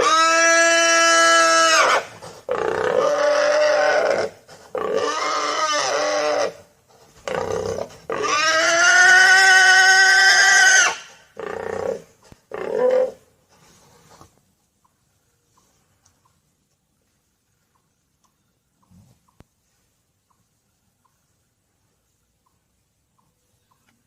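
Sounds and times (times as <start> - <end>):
pigs squealing: 0.0 - 6.6, 7.3 - 13.2.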